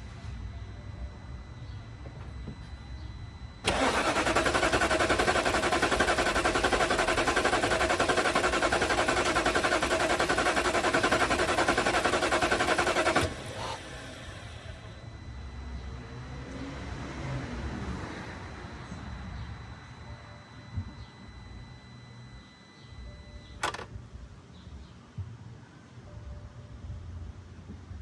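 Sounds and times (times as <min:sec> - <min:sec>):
car engine cranking: 0:03.6 - 0:15.0.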